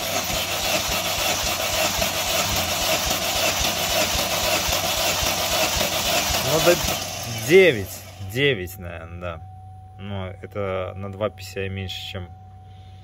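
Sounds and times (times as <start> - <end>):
engine cranking on starter motor: 0.0 - 8.4.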